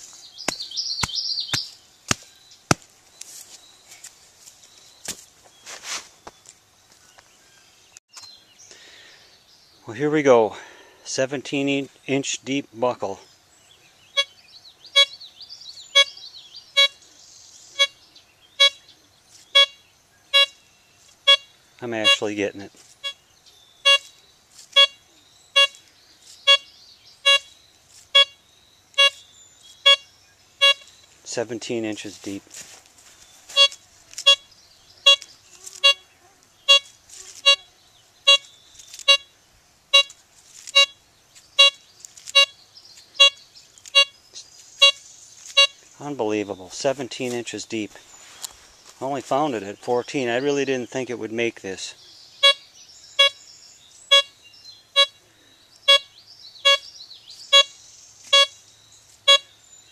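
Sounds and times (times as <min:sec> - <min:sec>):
metal detector beeping: 0:14.1 - 0:15.2, 0:15.9 - 0:17.0, 0:17.8 - 0:18.0, 0:18.6 - 0:18.8, 0:19.5 - 0:20.6, 0:21.2 - 0:22.4, 0:23.8 - 0:25.8, 0:26.4 - 0:30.9, 0:33.5 - 0:36.0, 0:36.6 - 0:39.3, 0:39.9 - 0:41.0, 0:41.6 - 0:42.6, 0:43.2 - 0:44.2, 0:44.8 - 0:45.8, 0:52.4 - 0:52.6, 0:53.2 - 0:53.4, 0:54.0 - 0:54.4, 0:55.0 - 0:55.2, 0:55.8 - 0:56.8, 0:57.5 - 0:58.6, 0:59.2 - 0:59.5.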